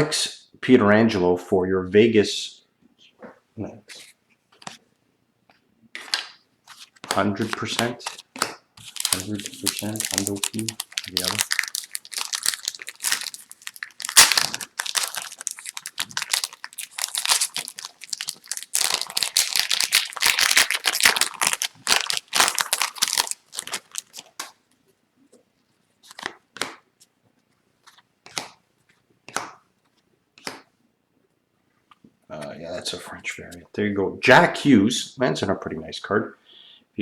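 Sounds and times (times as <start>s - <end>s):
foil wrapper tearing and crinkling: 8.0s - 24.6s.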